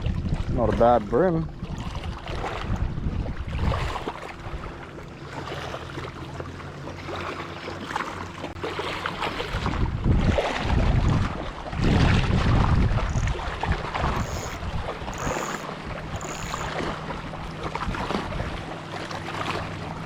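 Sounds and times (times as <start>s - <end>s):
steady low hum: 0.0s - 20.0s
wind gusting against microphone: 9.4s - 16.3s.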